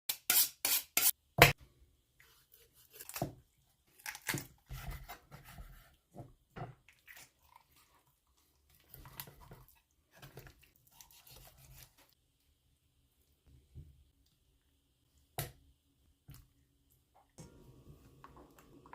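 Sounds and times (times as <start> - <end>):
chicken joints crunching and tearing: 2.9 - 4.7.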